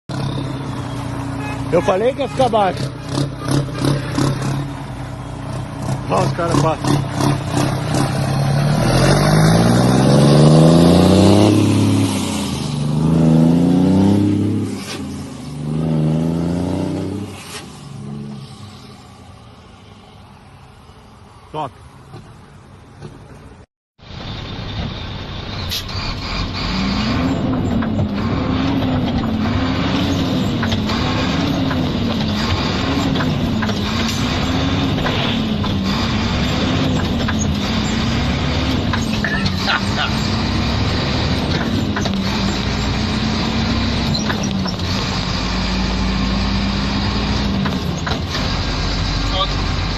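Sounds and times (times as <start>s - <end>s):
diesel truck engine rumble: 0.1s - 49.9s.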